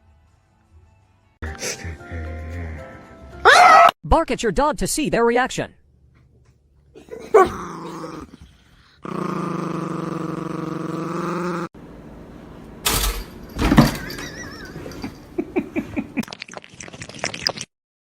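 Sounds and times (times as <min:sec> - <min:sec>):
dog growling: 0:07.2 - 0:11.8.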